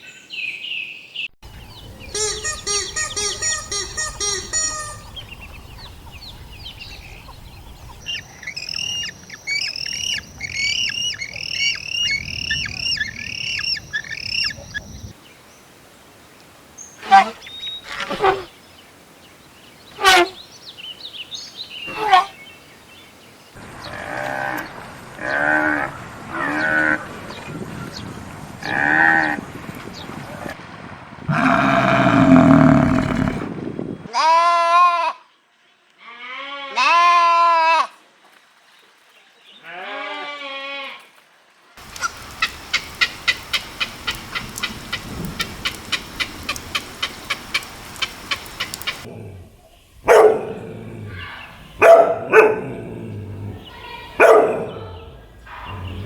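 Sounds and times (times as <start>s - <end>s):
farm animal bleating: 17.0s - 18.5s, 21.9s - 22.3s, 31.3s - 33.4s, 34.1s - 35.2s, 36.0s - 37.9s, 39.6s - 41.0s
sheep bleating: 36.0s - 37.8s
steady hiss: 41.8s - 51.8s.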